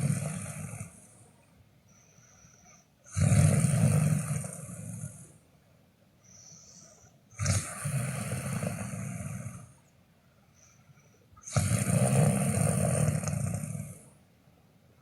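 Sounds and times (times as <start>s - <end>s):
person snoring: 0.0s - 1.3s, 3.0s - 5.3s, 6.8s - 9.8s, 11.4s - 14.2s
faint breath: 0.0s - 5.6s, 6.2s - 14.3s.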